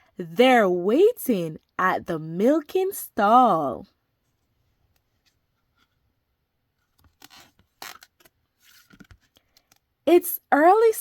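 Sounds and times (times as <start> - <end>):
book page rustling: 6.8 - 9.9.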